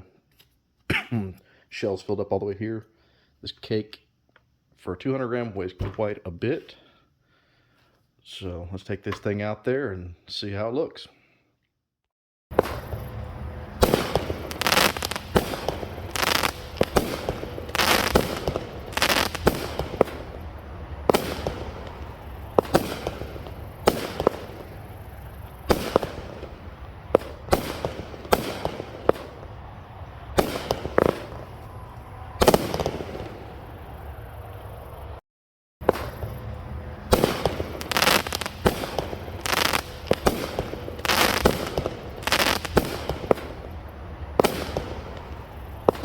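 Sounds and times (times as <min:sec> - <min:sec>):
firework bangs: 0:12.5 - 0:35.1, 0:35.8 - 0:46.0
crackling hiss: 0:12.5 - 0:35.2, 0:35.8 - 0:46.0.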